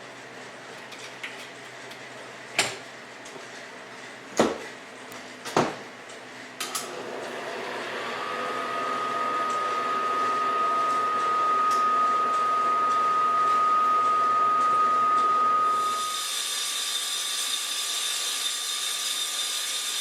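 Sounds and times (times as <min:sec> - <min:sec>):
slab saw cutting rock: 0:16.0 - 0:20.0.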